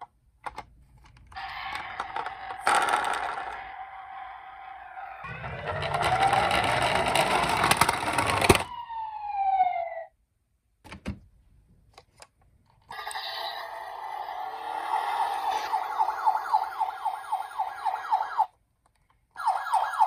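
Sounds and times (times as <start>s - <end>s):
toy siren sweeping: 1.4s - 10.1s, 12.9s - 18.5s, 19.4s - 20.0s
falling wind-down tone: 3.2s - 9.6s
clattering rattle: 5.3s - 8.6s.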